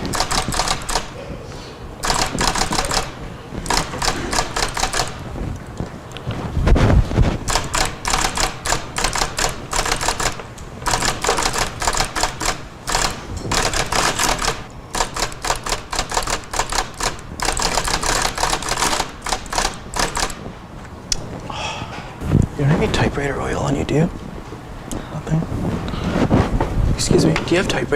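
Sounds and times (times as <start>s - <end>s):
typewriter keystrokes clattering: 0.0s - 1.2s, 2.0s - 5.2s, 7.4s - 20.4s.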